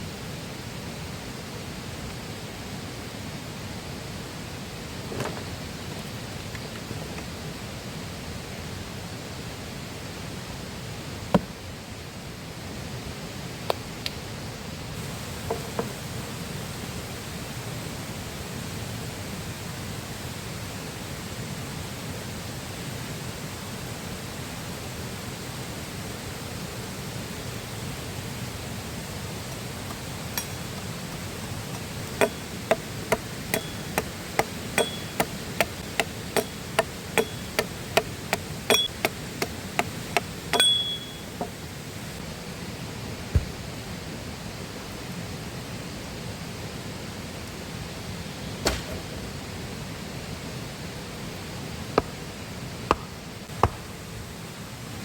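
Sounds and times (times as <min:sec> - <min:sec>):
river flowing: 0:26.8 - 0:44.7
sharp ringing strikes: 0:30.4 - 0:30.8, 0:32.2 - 0:39.6, 0:40.5 - 0:41.6.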